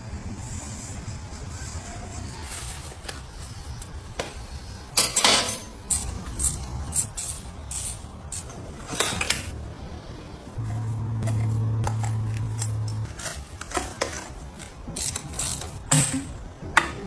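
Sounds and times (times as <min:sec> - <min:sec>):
metal objects clinking: 0:05.0 - 0:09.5, 0:10.7 - 0:16.3
low rumble: 0:09.6 - 0:13.2.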